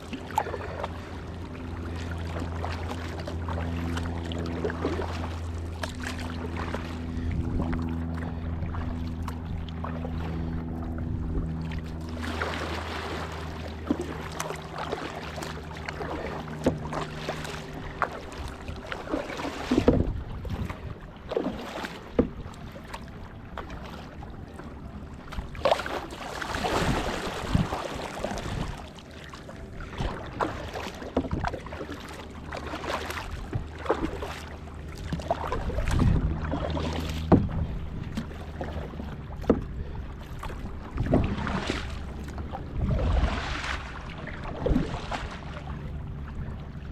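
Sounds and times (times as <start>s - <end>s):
low steady hum: 0.0s - 46.9s
paddle strokes splashing water: 0.0s - 46.9s.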